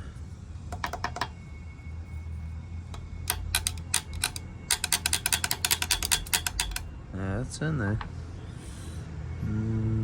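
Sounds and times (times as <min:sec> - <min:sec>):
sharp metal clicks: 0:00.7 - 0:01.4, 0:02.9 - 0:06.9.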